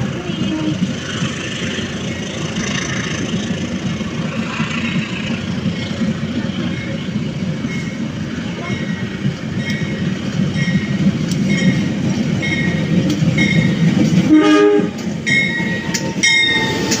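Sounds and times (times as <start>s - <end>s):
locomotive rumble: 0.0s - 17.0s
locomotive horn blast: 0.1s - 0.9s, 14.2s - 15.1s.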